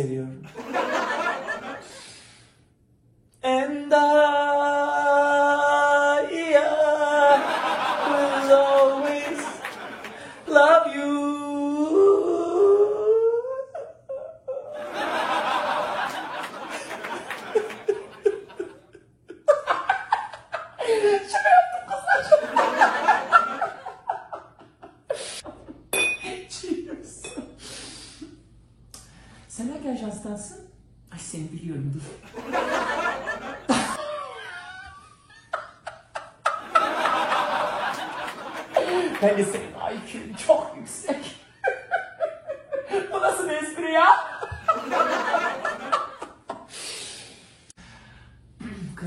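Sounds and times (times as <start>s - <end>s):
people laughing: 0.5s - 2.1s, 6.9s - 10.5s, 13.5s - 25.8s, 32.2s - 46.7s.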